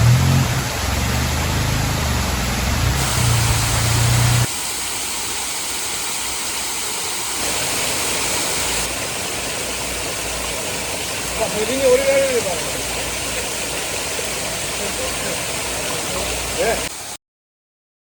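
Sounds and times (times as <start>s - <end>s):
small car engine running: 0.0s - 4.5s
waterfall rushing: 0.0s - 17.2s.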